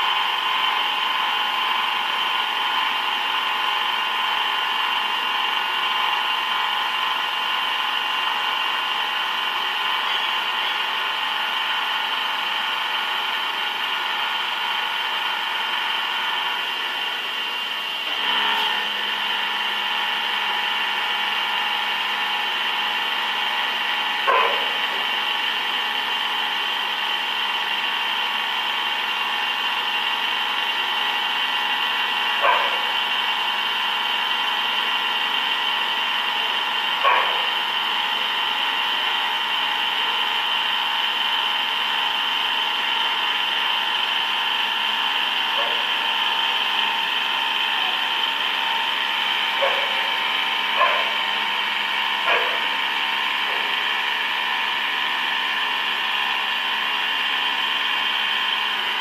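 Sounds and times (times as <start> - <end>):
lathe mechanical whine: 0.0 - 59.0.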